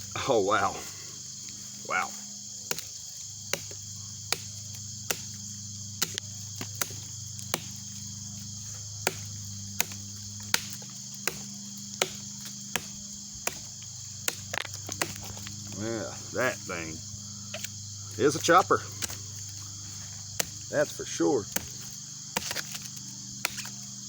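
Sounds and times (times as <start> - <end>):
insects chirring: 0.0 - 24.0
knife chopping wood: 2.6 - 8.1, 8.7 - 15.9, 17.5 - 24.0.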